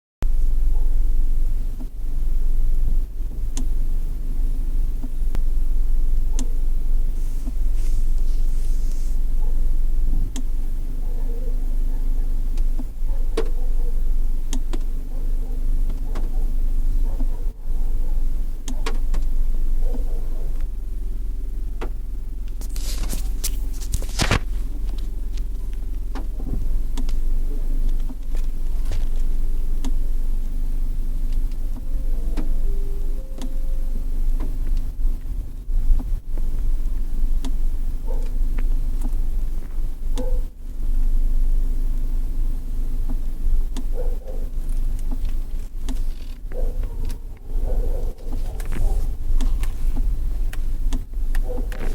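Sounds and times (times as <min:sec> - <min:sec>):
car engine rumbling: 0:00.2 - 0:51.9
sharp clicks: 0:37.4 - 0:37.6, 0:43.0 - 0:43.9, 0:44.6 - 0:51.9.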